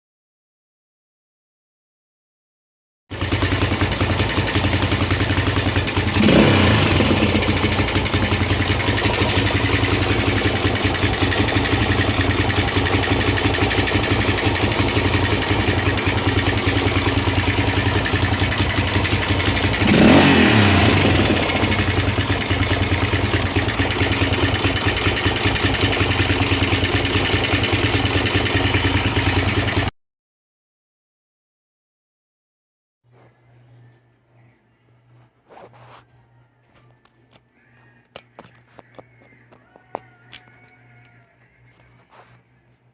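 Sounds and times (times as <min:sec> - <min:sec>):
engine revving: 0:03.1 - 0:29.9
motorcycle engine clattering: 0:03.1 - 0:29.9, 0:36.8 - 0:42.4.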